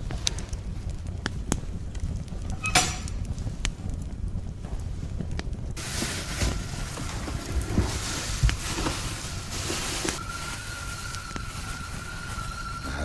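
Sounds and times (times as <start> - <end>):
kettle hissing: 0.0 - 13.0
kettle whistle: 8.8 - 13.0.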